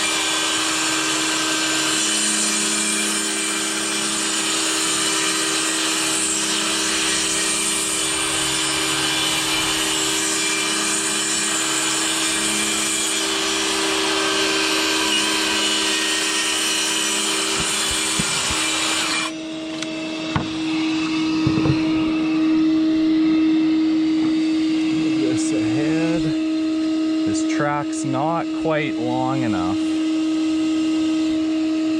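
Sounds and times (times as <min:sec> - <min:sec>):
track saw cutting wood: 0:00.0 - 0:31.9
knocks: 0:17.5 - 0:18.8, 0:20.3 - 0:20.6, 0:21.4 - 0:22.1.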